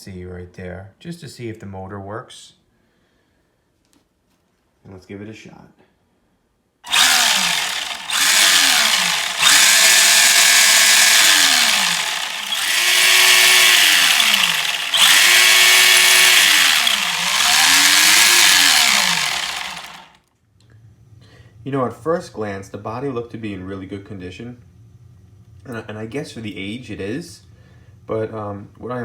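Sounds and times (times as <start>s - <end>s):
electric motor whining: 6.9s - 20.1s.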